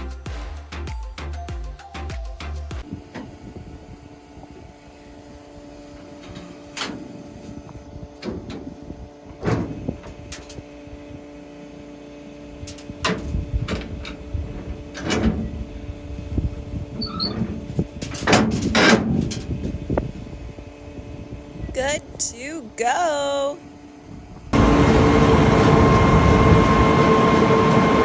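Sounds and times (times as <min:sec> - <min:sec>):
machinery engine humming: 0:19.6 - 0:28.0.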